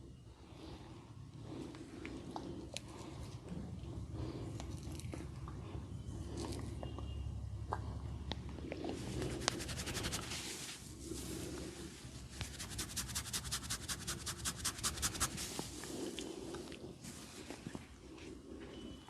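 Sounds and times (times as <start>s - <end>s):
rapid scratching of hair and scalp: 9.0s - 15.9s.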